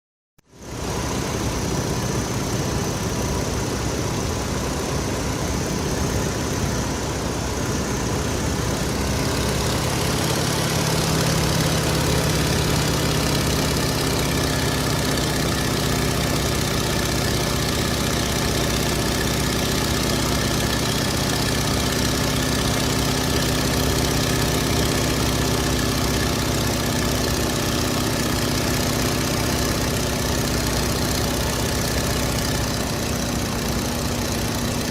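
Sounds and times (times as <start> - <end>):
radial engine running: 0.6 - 34.9.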